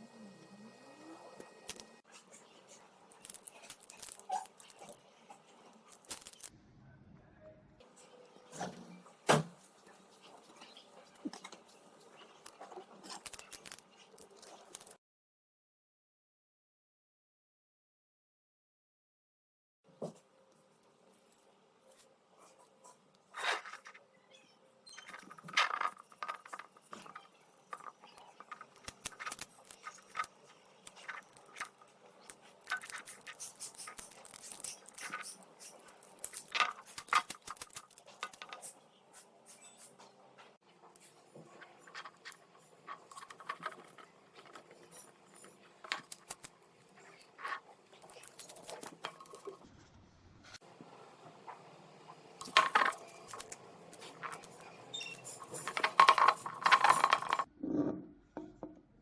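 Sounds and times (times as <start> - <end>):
plastic film crackling and crinkling: 1.4 - 6.5, 9.8 - 15.0, 25.2 - 39.9, 41.0 - 49.7.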